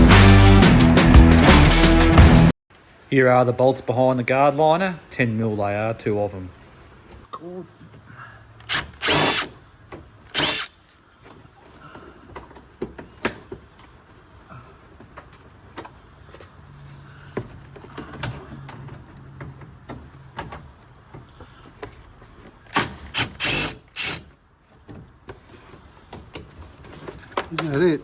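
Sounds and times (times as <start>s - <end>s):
cordless drill spinning: 8.6s - 9.5s, 10.3s - 10.8s, 22.7s - 24.2s.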